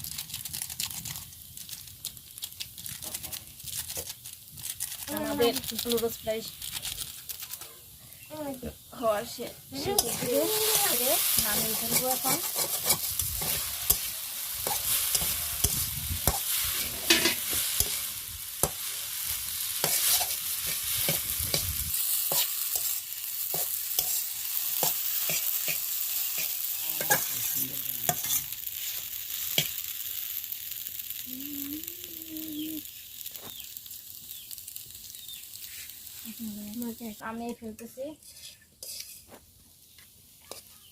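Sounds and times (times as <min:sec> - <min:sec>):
noodles sizzling in a frying pan: 0:00.0 - 0:40.9.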